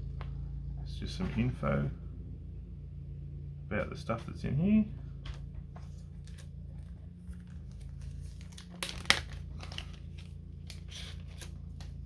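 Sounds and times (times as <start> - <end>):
packaging crinkling and rustling: 6.2 - 12.0
packaging snap: 8.4 - 10.0.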